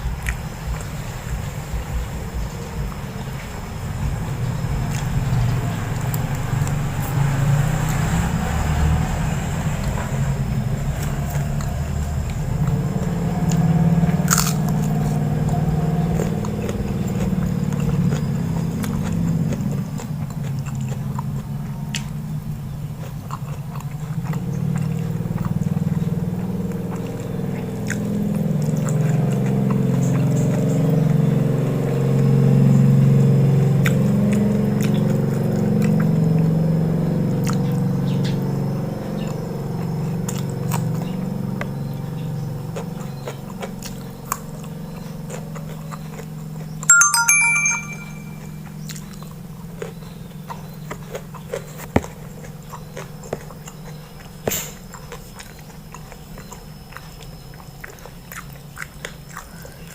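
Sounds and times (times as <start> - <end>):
person chewing: 14.3 - 14.5.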